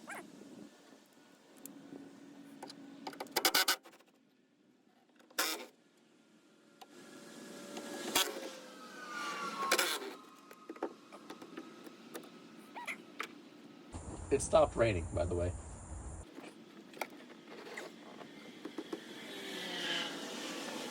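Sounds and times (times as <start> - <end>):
vehicle passing by: 7.1 - 10.3, 19.0 - 20.9.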